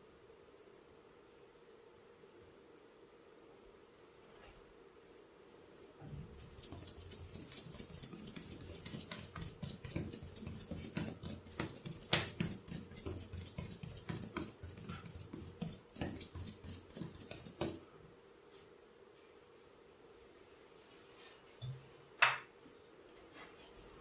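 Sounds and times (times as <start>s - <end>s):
rapid massage tapping: 6.4s - 17.8s.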